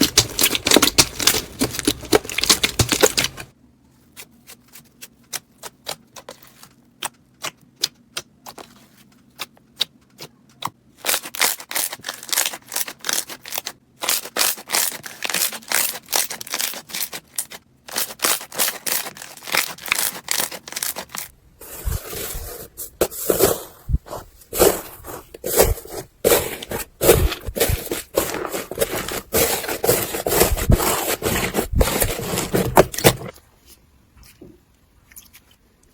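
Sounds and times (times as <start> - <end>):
slime popping and crackling: 0.0 - 3.5.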